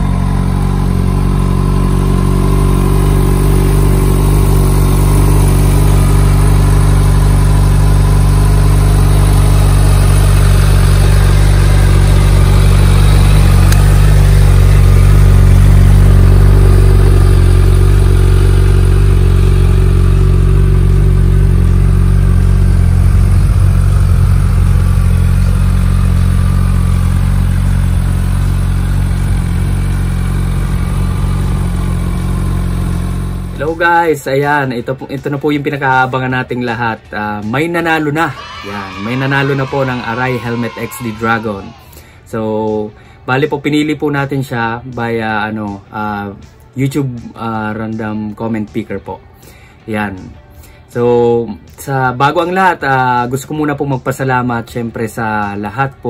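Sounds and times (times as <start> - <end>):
motorcycle engine idling: 0.0 - 36.4.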